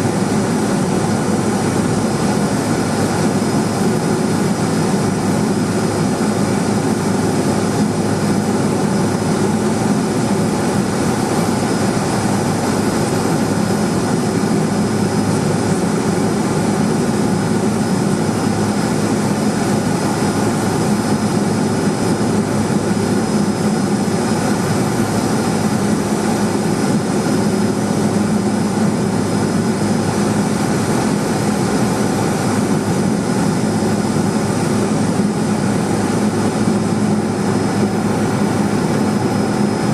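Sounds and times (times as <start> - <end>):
aircraft engine drone: 0.0 - 39.9.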